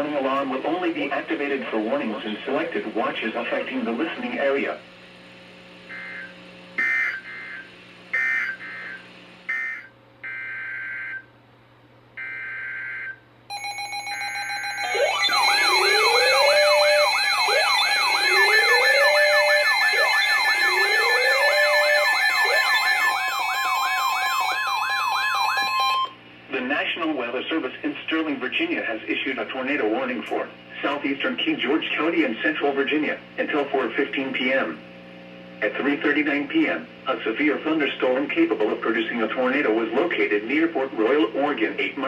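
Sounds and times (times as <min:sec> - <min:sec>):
fast sweeping siren: 0:05.9 - 0:11.2, 0:12.2 - 0:26.1
steady beeping tones: 0:05.9 - 0:11.2, 0:12.2 - 0:26.1
steady alarm tone: 0:05.9 - 0:11.3, 0:12.2 - 0:26.2
harsh digital data bursts: 0:13.5 - 0:25.2.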